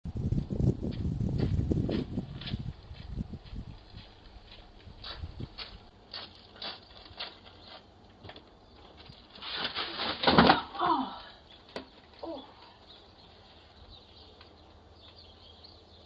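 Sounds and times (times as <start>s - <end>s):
woman slipping and falling: 6.1s - 11.0s.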